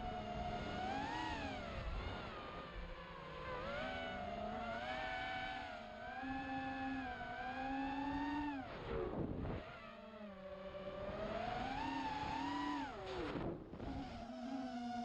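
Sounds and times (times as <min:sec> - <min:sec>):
drone motors whining: 0:03.5 - 0:15.0.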